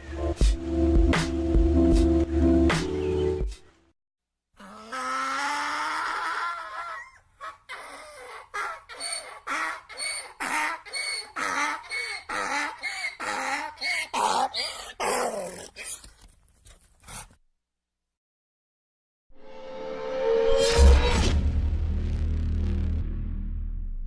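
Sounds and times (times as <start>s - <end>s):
donkey braying: 4.6s - 15.8s.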